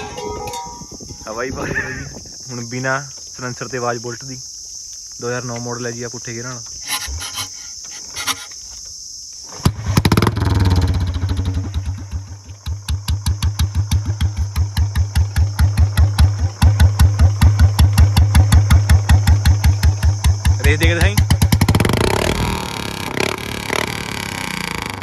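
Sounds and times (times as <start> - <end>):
open-exhaust engine idling: 9.6 - 25.0.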